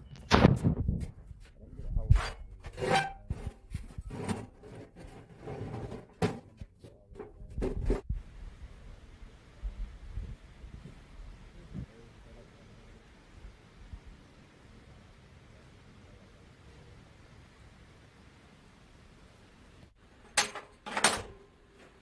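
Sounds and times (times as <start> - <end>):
steel pieces knocking and clanking: 20.2 - 21.3.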